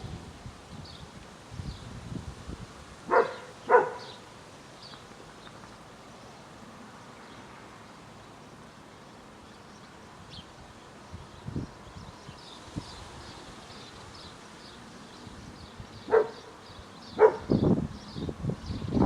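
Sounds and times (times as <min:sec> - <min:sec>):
dog barking: 0:03.1 - 0:04.2, 0:16.1 - 0:16.5, 0:17.2 - 0:17.5.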